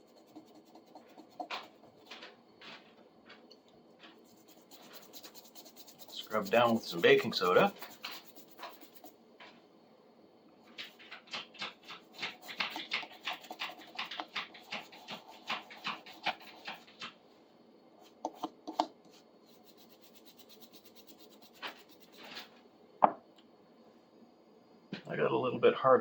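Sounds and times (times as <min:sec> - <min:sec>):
brush scrubbing metal: 0:00.0 - 0:02.3, 0:04.0 - 0:09.2, 0:11.6 - 0:16.9, 0:19.4 - 0:22.5.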